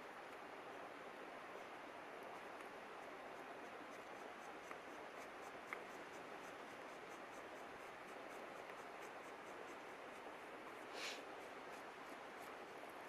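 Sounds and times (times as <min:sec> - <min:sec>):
faint ticks: 0:01.5 - 0:13.0
faint rushing river: 0:10.0 - 0:13.0.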